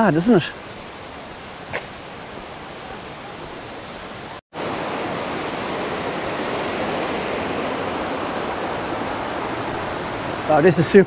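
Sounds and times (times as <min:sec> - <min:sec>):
cicadas buzzing: 0:00.0 - 0:11.0
waterfall rushing: 0:04.6 - 0:11.0.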